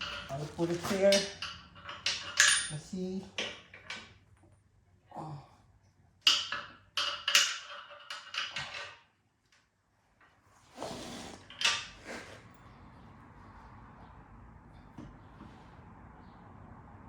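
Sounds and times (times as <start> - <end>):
scraping rustle: 0.0 - 2.4
small metal hardware clinking: 0.0 - 4.2, 6.2 - 9.1.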